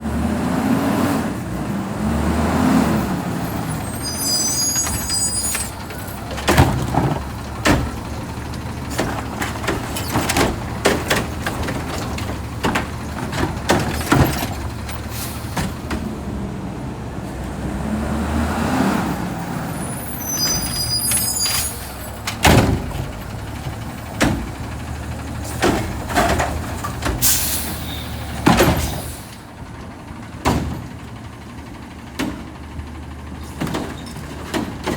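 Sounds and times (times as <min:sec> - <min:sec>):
truck engine revving: 0:00.0 - 0:34.9
metal clanks and bangs: 0:03.0 - 0:16.1, 0:20.4 - 0:29.3, 0:29.9 - 0:31.2, 0:33.4 - 0:34.9
high squeals: 0:03.4 - 0:06.5, 0:19.7 - 0:22.2.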